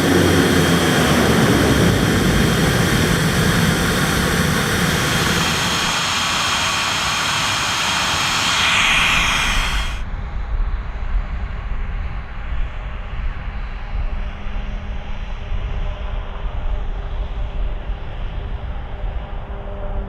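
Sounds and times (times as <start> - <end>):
low engine rumble: 0.0 - 10.0
turboprop engines running: 0.0 - 10.0.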